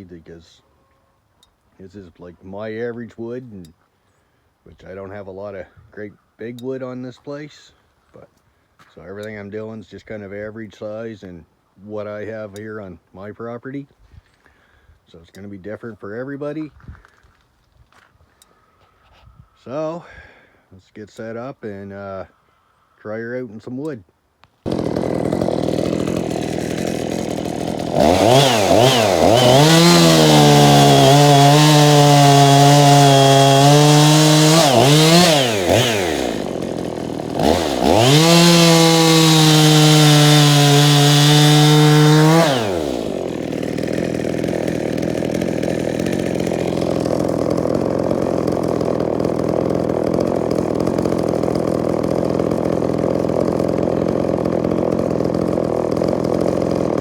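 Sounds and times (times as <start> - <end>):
chainsaw cutting hardwood: 24.6 - 57.0
chainsaw idling and revving: 24.6 - 57.0.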